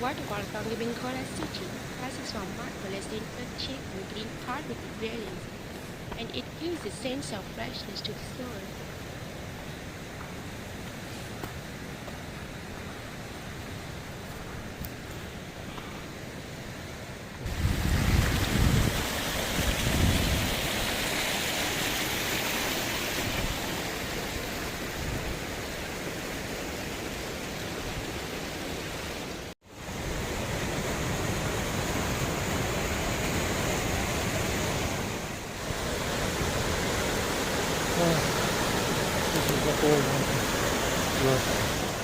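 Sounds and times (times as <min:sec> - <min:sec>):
waterfall rushing: 0:17.5 - 0:42.0.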